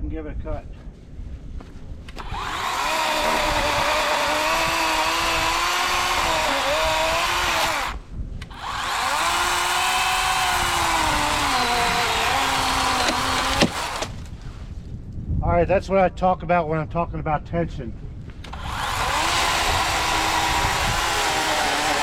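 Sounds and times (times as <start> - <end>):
electric chainsaw cutting wood: 2.1 - 14.3, 18.5 - 22.0.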